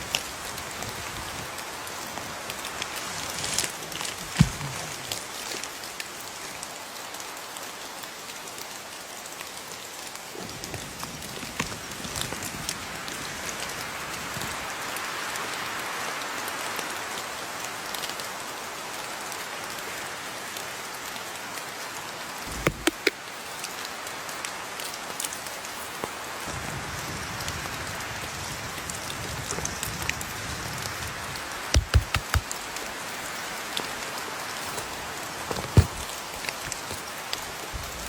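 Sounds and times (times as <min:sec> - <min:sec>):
steady rain falling: 0:00.0 - 0:38.0
sharp loud knocks: 0:22.7 - 0:23.2, 0:31.7 - 0:32.6.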